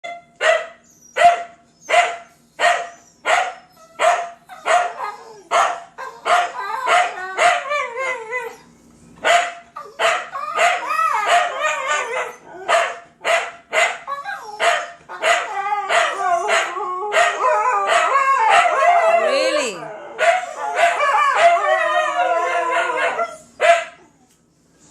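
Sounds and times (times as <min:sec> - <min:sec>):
dogs barking: 0:00.0 - 0:08.1, 0:09.2 - 0:19.6, 0:20.2 - 0:24.1
dogs howling: 0:03.5 - 0:08.7, 0:09.8 - 0:13.0, 0:14.0 - 0:24.2.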